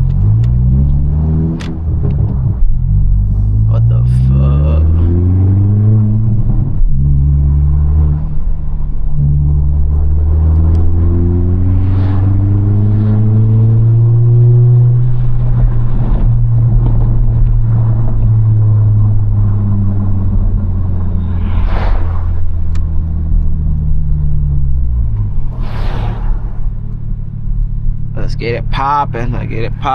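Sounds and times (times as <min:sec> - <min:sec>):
car engine accelerating: 0:00.0 - 0:29.9
short rushing noises: 0:21.0 - 0:22.8, 0:25.3 - 0:26.9.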